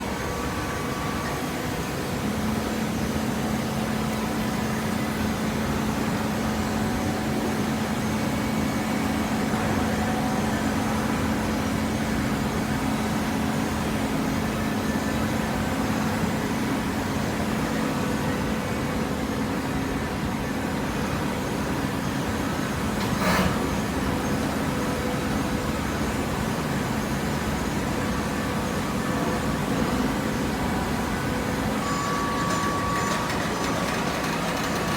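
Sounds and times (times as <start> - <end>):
baling press humming: 30.9 - 34.9.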